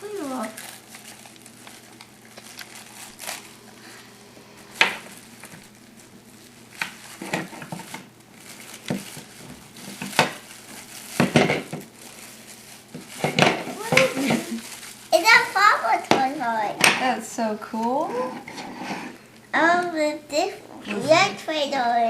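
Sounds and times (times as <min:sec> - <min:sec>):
packaging crinkling and rustling: 0:00.0 - 0:04.0, 0:04.6 - 0:17.0
faint steady hum: 0:00.0 - 0:22.0.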